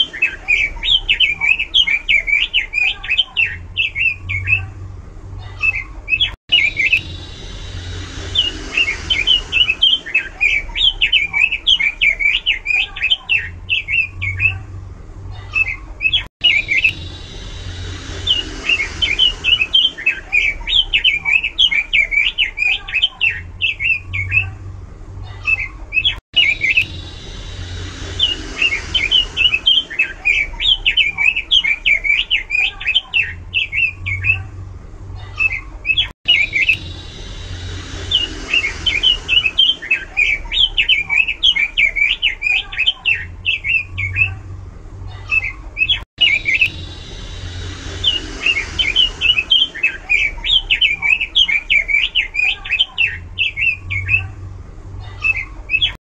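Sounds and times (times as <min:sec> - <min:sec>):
bird singing high chirping notes: 0:05.7 - 0:14.5, 0:15.6 - 0:24.4, 0:45.8 - 0:54.2.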